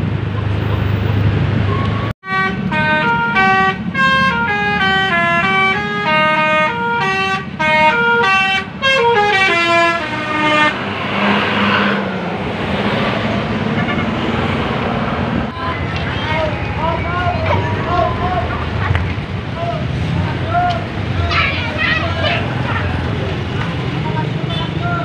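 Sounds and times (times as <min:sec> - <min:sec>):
bus engine running: 0:00.0 - 0:25.0
bus air horns playing melody: 0:01.8 - 0:12.2, 0:13.7 - 0:14.3
loud rushing noise: 0:09.7 - 0:24.5.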